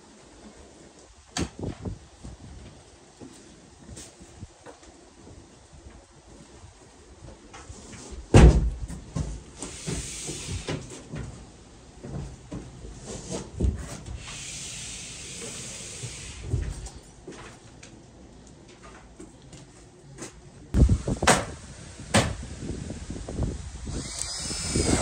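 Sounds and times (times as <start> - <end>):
hissing scraping noise: 9.6 - 11.0, 14.0 - 16.7.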